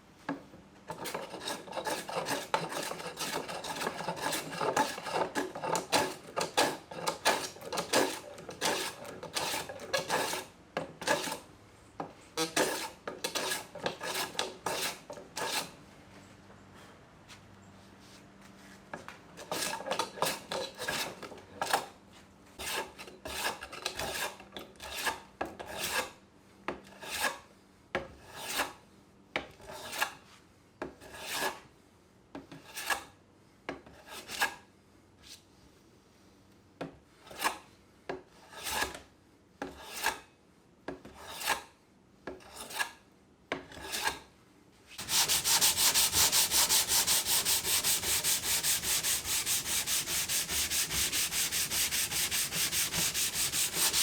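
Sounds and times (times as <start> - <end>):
hand scraping strokes on workpiece: 0.9 - 11.4, 12.4 - 15.8, 17.3 - 26.2, 26.8 - 27.5, 28.2 - 28.8, 29.6 - 31.7, 38.3 - 39.0, 39.7 - 40.2, 41.1 - 41.7, 44.9 - 54.0
fast continuous scrubbing: 45.0 - 54.0.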